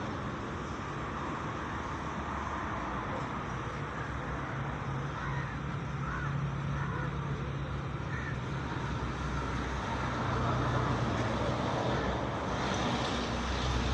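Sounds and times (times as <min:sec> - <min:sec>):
road traffic rumble: 0:00.0 - 0:13.9.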